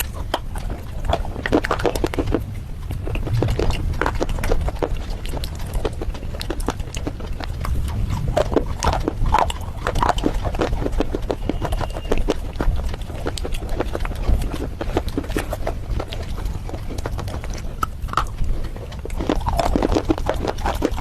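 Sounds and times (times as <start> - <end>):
low rumble: 0.0 - 11.7
chewing crunches: 0.0 - 21.0.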